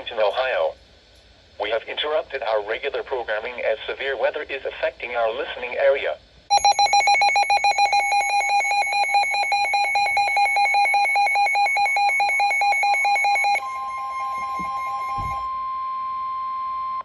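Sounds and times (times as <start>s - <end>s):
steady warning alarm tone: 6.5s - 17.0s
weather radio alarm beeping rapidly: 6.5s - 17.0s.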